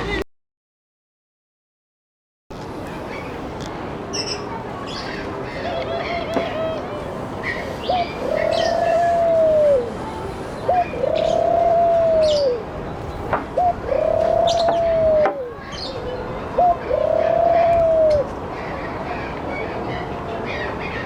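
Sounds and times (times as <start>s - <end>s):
dove cooing: 5.6s - 10.0s, 10.6s - 12.7s, 13.5s - 18.3s.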